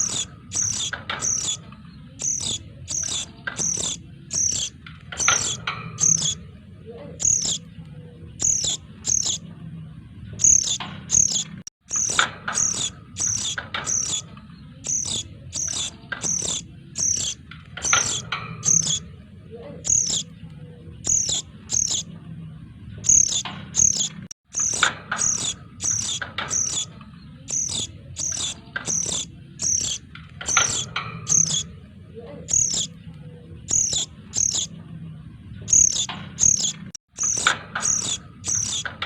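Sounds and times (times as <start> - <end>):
high-pitched chick chirping: 0.0 - 6.4, 7.2 - 7.7, 8.4 - 9.4, 10.4 - 19.0, 19.8 - 20.3, 21.0 - 22.0, 23.1 - 31.6, 32.5 - 32.9, 33.7 - 34.7, 35.7 - 38.9.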